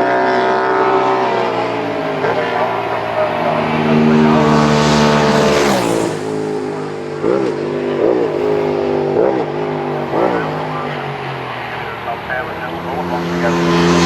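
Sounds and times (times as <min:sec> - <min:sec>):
racing motorcycle passing: 0:00.0 - 0:14.0.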